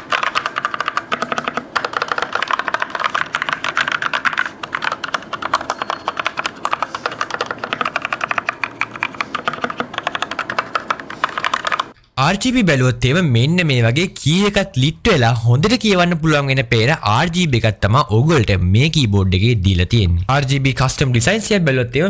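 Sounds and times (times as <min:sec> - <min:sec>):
mechanical keyboard key clacks: 0:00.0 - 0:12.0.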